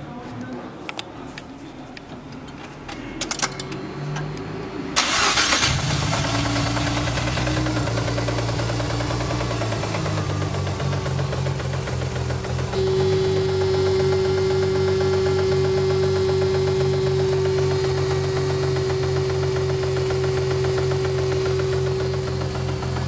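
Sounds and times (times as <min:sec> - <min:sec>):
rotary engine starting and idling: 0:03.2 - 0:23.0
engine knocking: 0:05.1 - 0:23.0.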